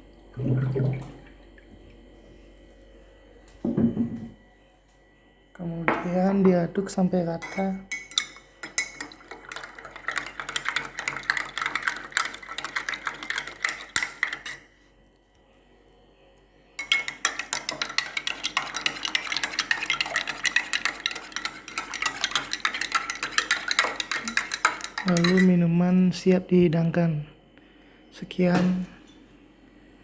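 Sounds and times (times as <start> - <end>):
spoon clinking in a glass: 7.4 - 14.7, 16.8 - 25.6.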